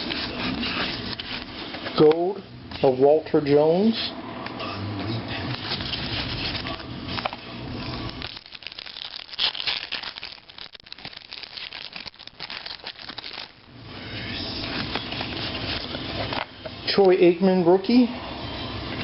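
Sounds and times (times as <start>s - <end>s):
foil wrapper crinkling: 8.0s - 13.7s.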